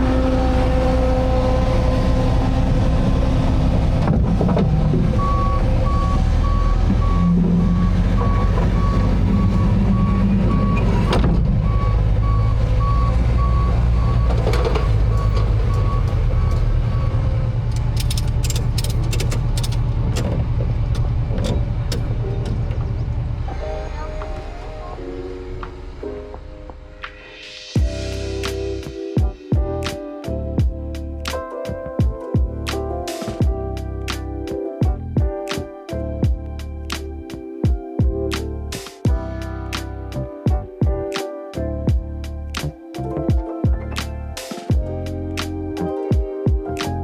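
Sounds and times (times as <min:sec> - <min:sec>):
vehicle engine running: 0:00.0 - 0:27.1
reversing alarm beeping: 0:05.2 - 0:17.3
sharp clicks and knocks: 0:17.7 - 0:23.3.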